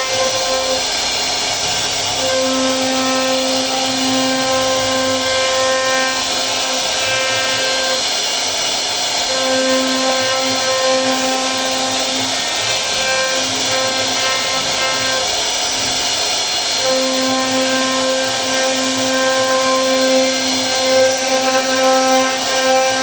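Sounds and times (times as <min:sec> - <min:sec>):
router spindle cutting wood: 0:00.0 - 0:23.0.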